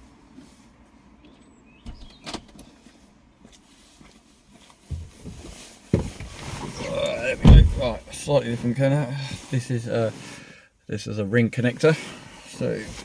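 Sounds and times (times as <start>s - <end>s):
handling noises: 0.3s - 8.2s
dull thud: 7.3s - 8.0s.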